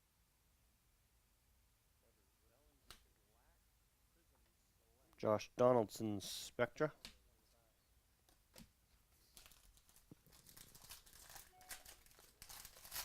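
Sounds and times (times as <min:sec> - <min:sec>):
wrapper crinkling and tearing: 0:09.2 - 0:13.0.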